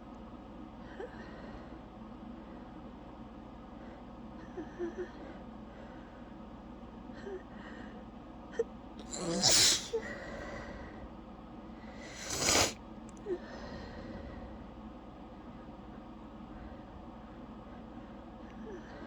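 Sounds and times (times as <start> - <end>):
woman sneezing: 9.1 - 10.0, 12.1 - 12.8
drawn-in breath: 11.9 - 14.8.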